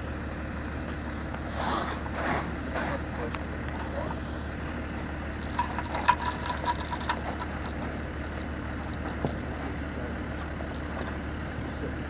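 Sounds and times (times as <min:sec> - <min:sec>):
small metal pieces clinking: 0:05.4 - 0:09.5.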